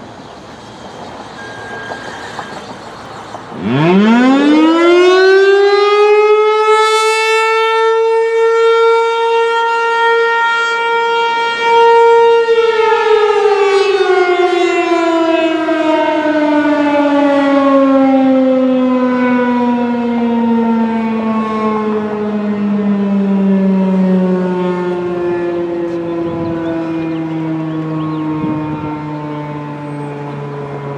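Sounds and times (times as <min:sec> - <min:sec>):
rotating tornado siren: 0:00.0 - 0:30.9.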